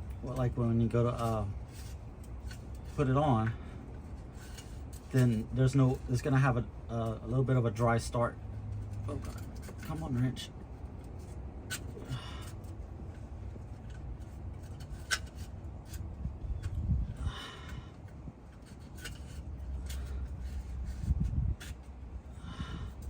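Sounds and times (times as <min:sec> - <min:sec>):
low steady rumble: 0:00.0 - 0:23.0
wrench rasping: 0:17.6 - 0:21.9.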